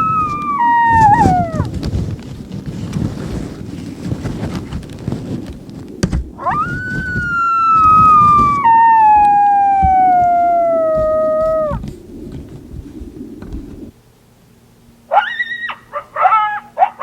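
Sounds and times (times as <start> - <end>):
coyote howling: 0.0 - 1.8, 6.2 - 13.9, 15.1 - 17.0.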